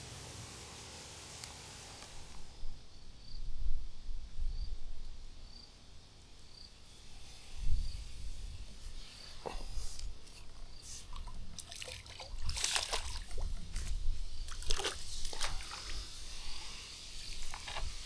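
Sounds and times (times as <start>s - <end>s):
water sloshing and splashing: 11.0s - 16.0s, 17.2s - 17.9s.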